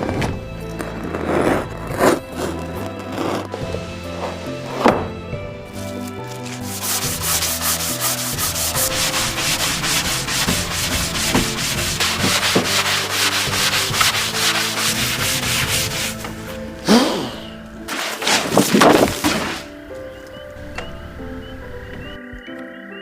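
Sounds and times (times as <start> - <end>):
rapid rubbing strokes by hand: 5.7 - 16.5.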